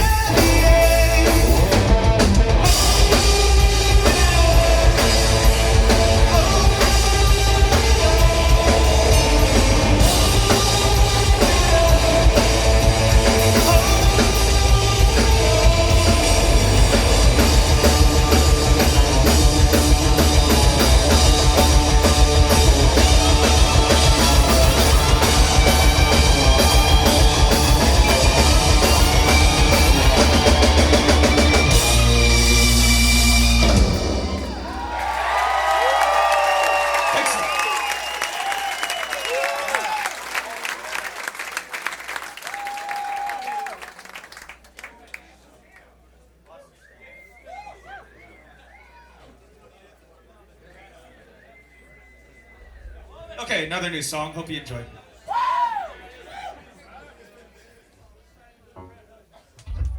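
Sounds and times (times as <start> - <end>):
live rock band playing: 0.0 - 35.0
drum kit pounding: 0.0 - 36.2, 59.6 - 59.9.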